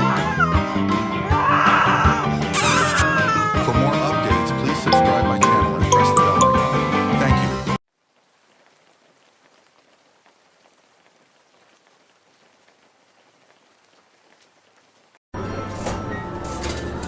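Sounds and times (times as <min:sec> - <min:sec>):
fine crackle: 0:07.9 - 0:15.2.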